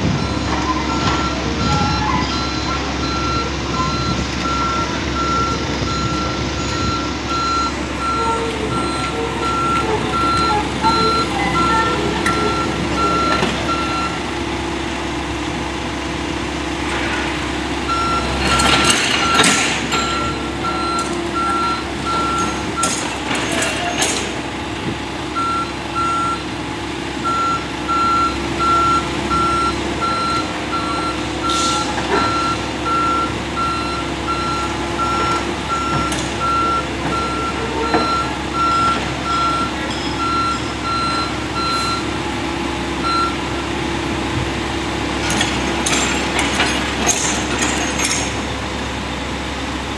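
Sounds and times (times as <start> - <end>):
excavator travel alarm beeping: 0.0 - 15.7, 16.9 - 48.8
excavator engine running: 0.0 - 49.9.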